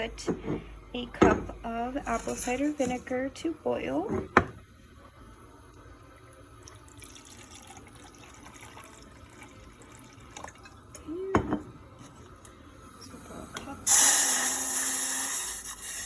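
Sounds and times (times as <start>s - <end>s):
liquid trickling: 6.2s - 11.0s.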